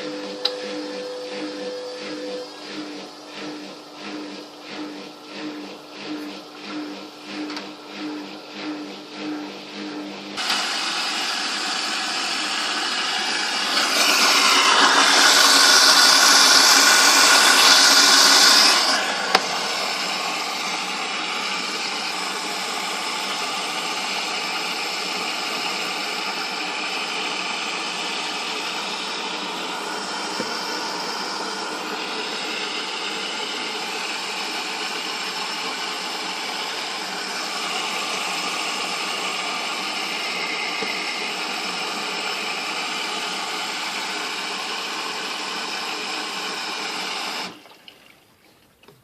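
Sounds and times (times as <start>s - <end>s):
washing machine running: 0.0s - 48.5s
washing machine hiss: 10.4s - 47.6s.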